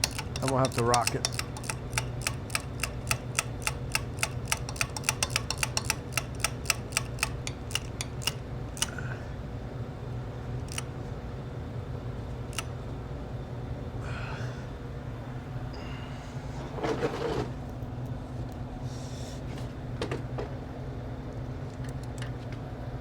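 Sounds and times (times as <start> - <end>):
hand ratchet clicking: 0.0 - 9.0.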